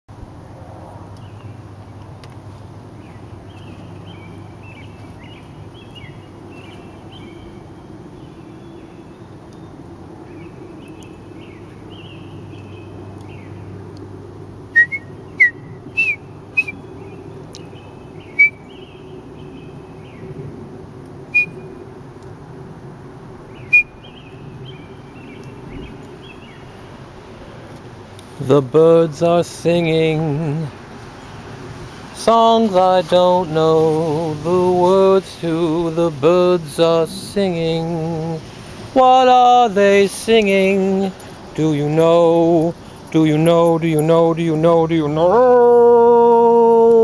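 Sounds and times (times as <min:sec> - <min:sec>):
soft whistled twittering: 0:14.7 - 0:16.9, 0:18.2 - 0:18.8, 0:21.3 - 0:21.7, 0:23.6 - 0:24.2.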